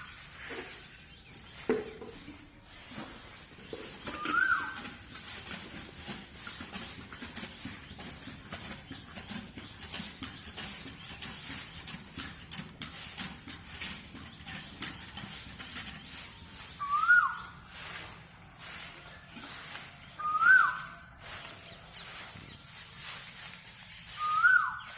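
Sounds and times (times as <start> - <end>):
bird call: 3.7 - 5.4, 14.4 - 18.8, 19.4 - 23.2, 24.0 - 24.9.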